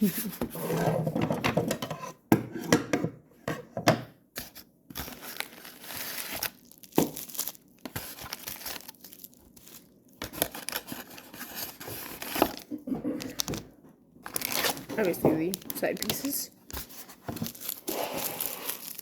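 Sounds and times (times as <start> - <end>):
plastic and paper crinkling: 4.4 - 19.0.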